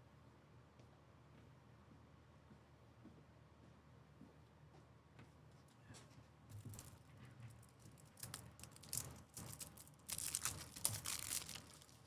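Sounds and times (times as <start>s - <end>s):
wrappers crinkling and tearing: 7.6s - 12.0s.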